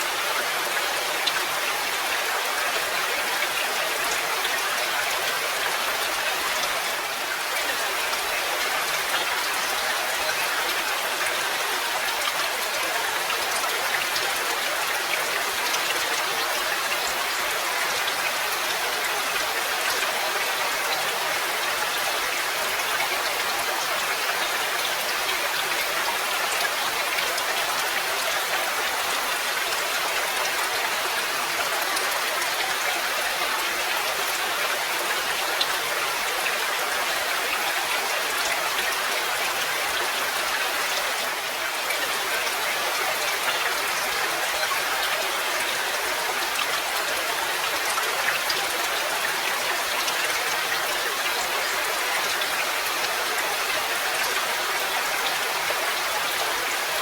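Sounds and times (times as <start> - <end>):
steady rain falling: 0.0 - 57.0.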